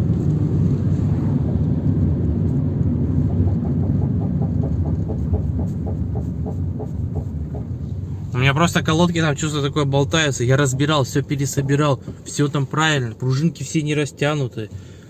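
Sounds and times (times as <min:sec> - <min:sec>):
road rumble: 0:00.0 - 0:15.0
drum brake knocking: 0:03.1 - 0:08.0.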